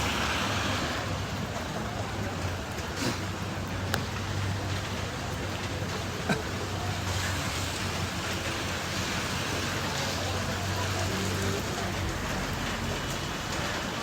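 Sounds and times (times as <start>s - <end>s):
steady rain falling: 0.0s - 14.0s.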